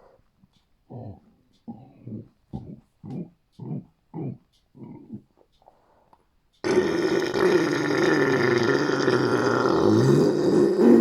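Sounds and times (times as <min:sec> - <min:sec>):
long loud burp: 0:06.6 - 0:11.0.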